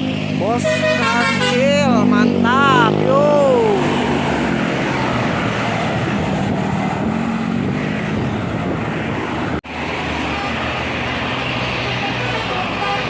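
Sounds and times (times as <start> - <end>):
vehicles driving past: 0.0 - 13.0.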